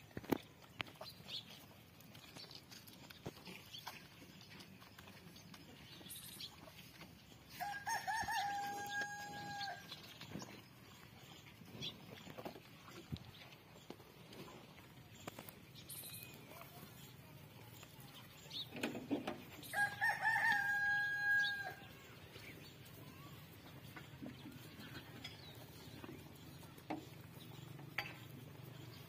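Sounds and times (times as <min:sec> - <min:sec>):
rooster crowing: 0:07.6 - 0:09.8, 0:19.7 - 0:21.8.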